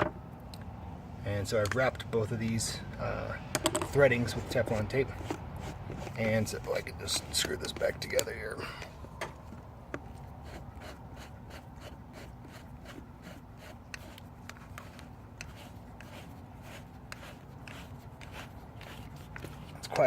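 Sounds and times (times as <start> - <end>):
plastic pipe fitting screwed by hand: 3.5 - 8.9.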